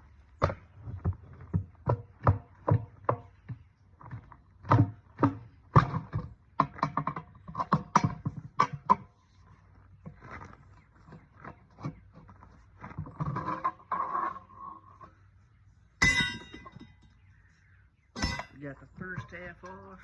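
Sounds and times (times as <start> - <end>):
tire irons knocking on steel rim: 16.0 - 16.9, 18.2 - 18.6.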